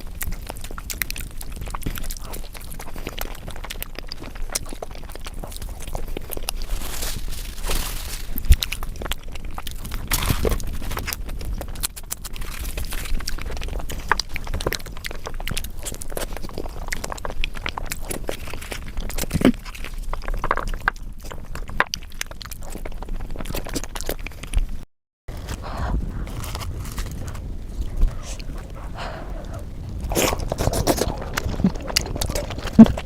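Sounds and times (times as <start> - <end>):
person chewing food: 0.0 - 6.9, 8.4 - 33.0
wet mouth clicks: 25.4 - 33.0.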